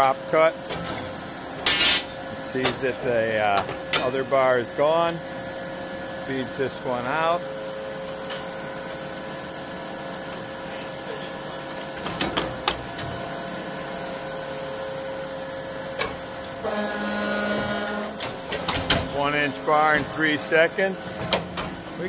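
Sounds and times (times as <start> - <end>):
saw machine hum: 12.6 - 21.0.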